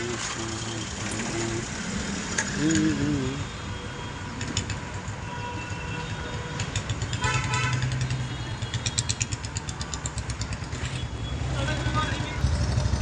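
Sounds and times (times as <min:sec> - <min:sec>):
vehicle engine humming: 0:00.0 - 0:05.0.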